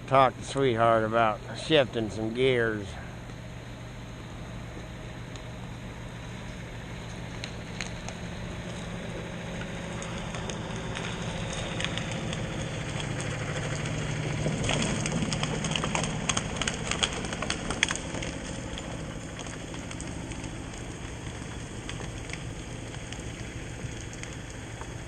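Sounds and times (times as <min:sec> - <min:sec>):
distant engine running: 0:00.0 - 0:25.0
crackling and snapping: 0:04.6 - 0:25.0
rain falling: 0:07.1 - 0:25.0.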